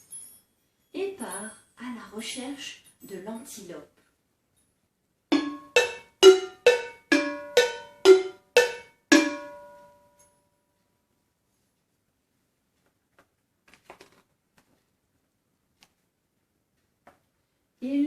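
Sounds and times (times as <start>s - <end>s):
hand percussion strokes: 5.3s - 9.9s.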